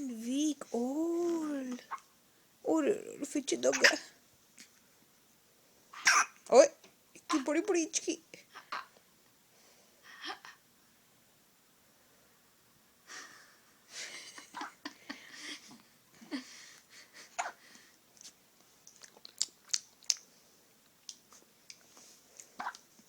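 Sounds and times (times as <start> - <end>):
baby hiccuping: 3.7 - 4.1, 6.0 - 6.4, 8.6 - 9.0.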